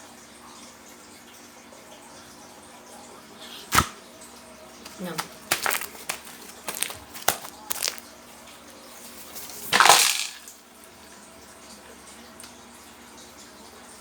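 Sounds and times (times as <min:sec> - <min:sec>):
slime squelching and popping: 0:04.9 - 0:08.0.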